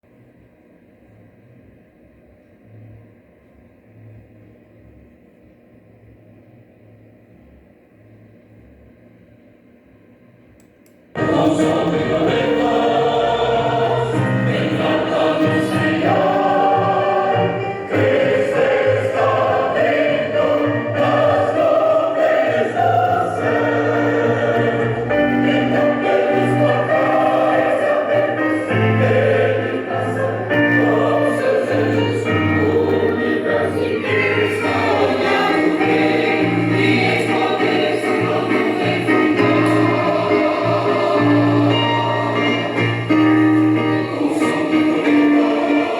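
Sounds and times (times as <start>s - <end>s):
choir singing a gospel hymn: 11.2s - 45.9s.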